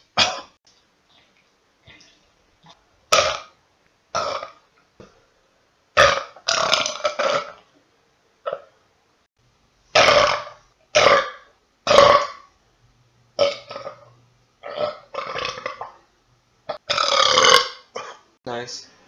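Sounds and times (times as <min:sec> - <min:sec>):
men burping: 0:16.7 - 0:18.2.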